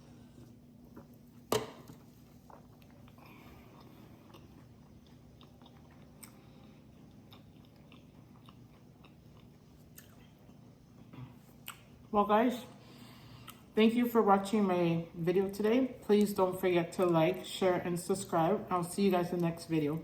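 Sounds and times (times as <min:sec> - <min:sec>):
person chewing food: 0:00.0 - 0:12.1, 0:13.2 - 0:13.7.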